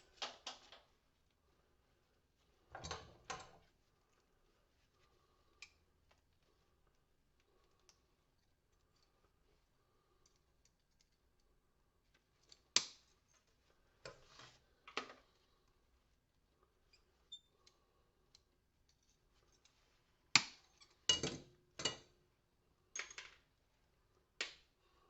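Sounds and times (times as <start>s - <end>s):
porcelain and brass parts clicking: 10.2s - 11.5s.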